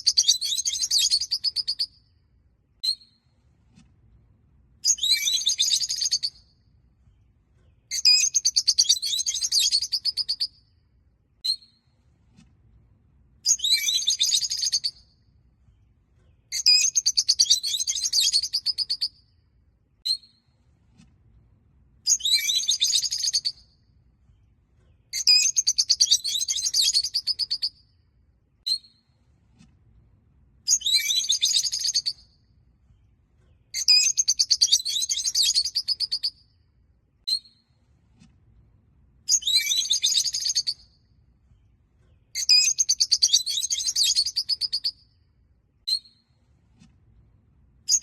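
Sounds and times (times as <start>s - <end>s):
sharp bird chirps: 0.0s - 1.9s, 4.9s - 6.4s, 7.9s - 10.5s, 13.5s - 15.0s, 16.5s - 19.1s, 30.7s - 32.2s, 33.8s - 36.4s, 39.3s - 40.9s, 42.4s - 45.0s.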